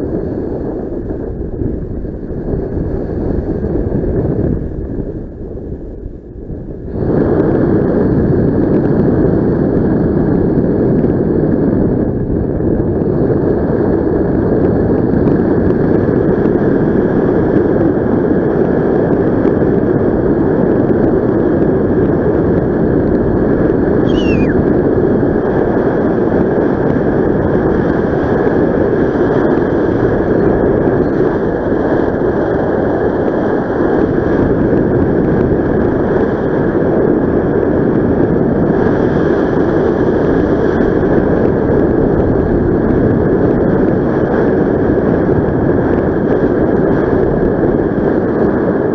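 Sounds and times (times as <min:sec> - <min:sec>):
wind rushing over microphone: 0:00.0 - 0:48.9
high whistle falling in pitch: 0:24.0 - 0:24.6.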